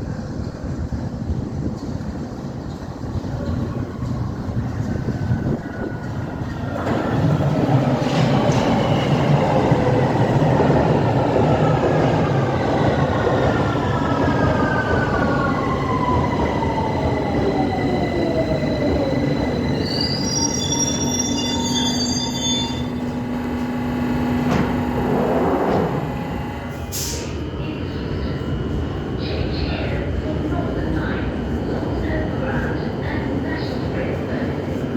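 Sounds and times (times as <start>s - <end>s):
train brakes squealing: 18.8s - 23.3s
train traction motors whining: 22.1s - 26.8s.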